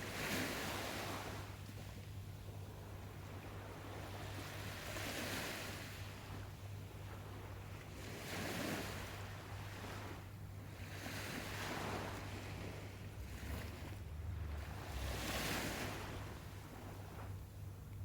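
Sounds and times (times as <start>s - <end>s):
waves washing ashore: 8.0s - 17.3s.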